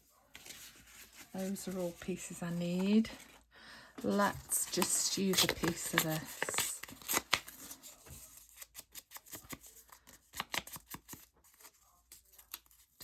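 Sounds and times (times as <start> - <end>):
scissors snipping paper: 4.4 - 13.0.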